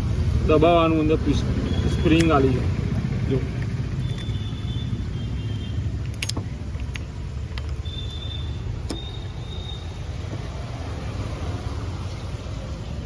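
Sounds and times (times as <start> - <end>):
metallic tool clicks and taps: 6.0 - 8.2.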